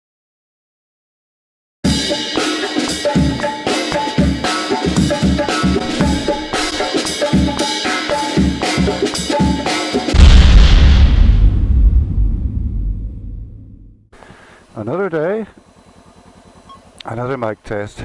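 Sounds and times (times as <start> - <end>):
jazz-funk music: 1.8 - 10.2
drum kit groove: 1.8 - 10.4
bass line: 3.1 - 7.7, 8.4 - 14.1
loud low rumble: 10.2 - 14.1.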